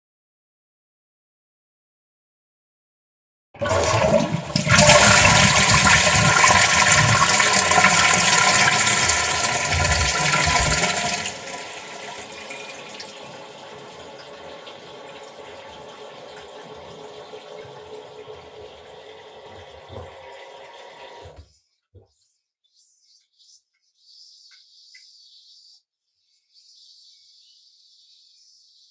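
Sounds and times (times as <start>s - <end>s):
toilet flushing: 3.6s - 21.4s
cistern refilling hiss: 4.2s - 21.3s.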